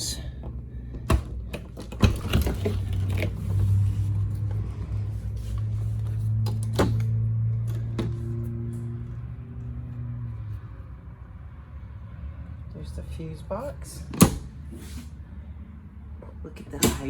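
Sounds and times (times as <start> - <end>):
door and latch clicks: 14.1 - 14.6, 16.8 - 17.0.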